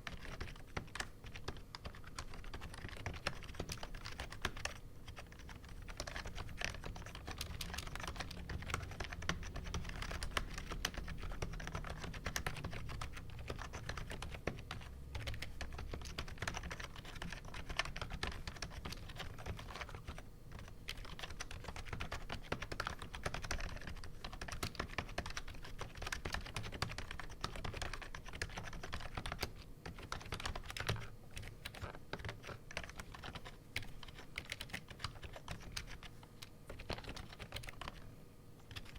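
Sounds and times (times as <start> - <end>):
fast typing on keyboard: 0.0 - 38.9.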